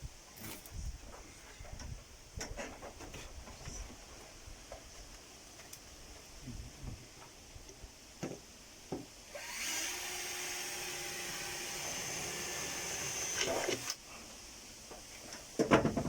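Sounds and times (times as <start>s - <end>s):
power drill running: 9.3s - 14.0s.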